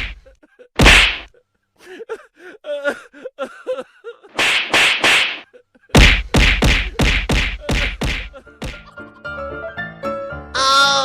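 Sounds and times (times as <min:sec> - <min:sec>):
sharp slapping hits: 0:00.0 - 0:00.2, 0:00.8 - 0:01.3, 0:04.4 - 0:05.4, 0:06.0 - 0:08.9.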